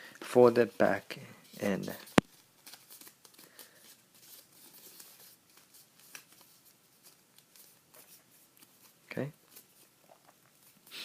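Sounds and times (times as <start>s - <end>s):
paper rustling being folded: 1.4s - 10.9s.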